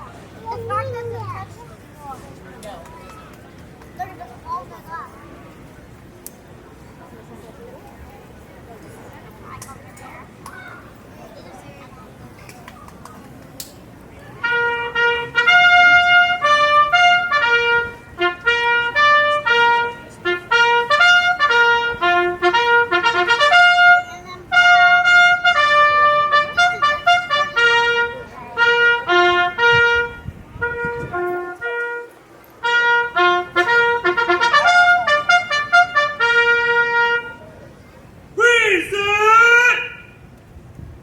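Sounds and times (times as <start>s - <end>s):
solo trumpet bugle call: 14.4s - 37.4s.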